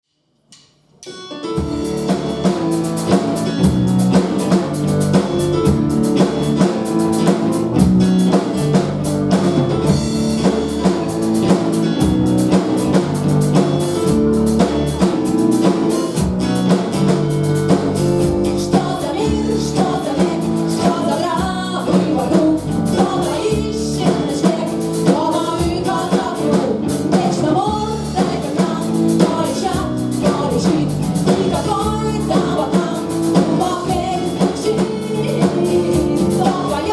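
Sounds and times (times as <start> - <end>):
drum kit beat: 1.0 - 36.9
guitar: 1.0 - 36.9
person singing: 18.0 - 36.9.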